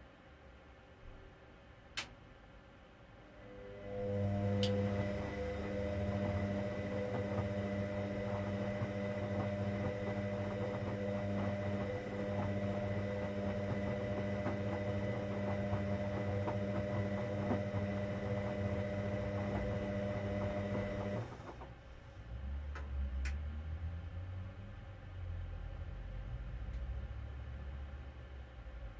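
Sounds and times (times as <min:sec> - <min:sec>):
washing machine humming: 0:03.2 - 0:22.2.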